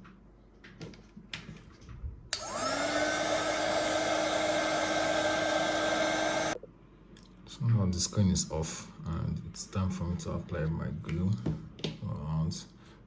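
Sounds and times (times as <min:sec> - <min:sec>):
hot-air blower whirring: 0:02.3 - 0:06.6.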